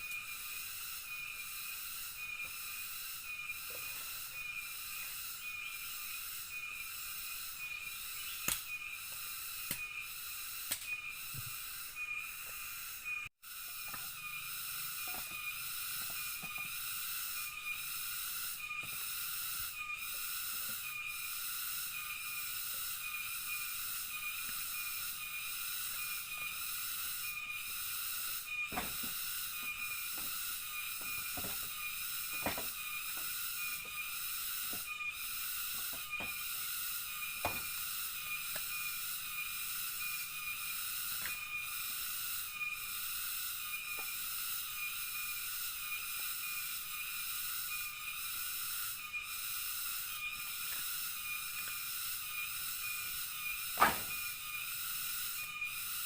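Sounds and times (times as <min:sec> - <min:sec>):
cicadas buzzing: 0:00.0 - 0:56.0
sharp knocks: 0:53.8 - 0:54.2.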